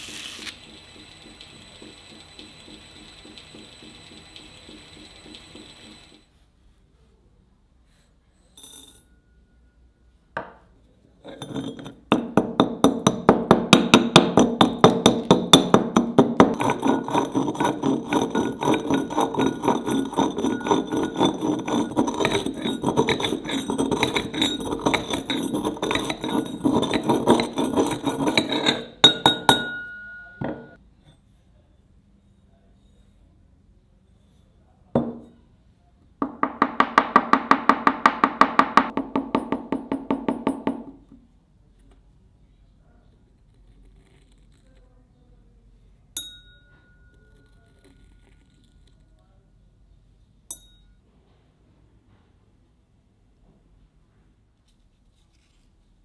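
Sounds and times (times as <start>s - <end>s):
hammer striking steel: 29.0s - 30.8s.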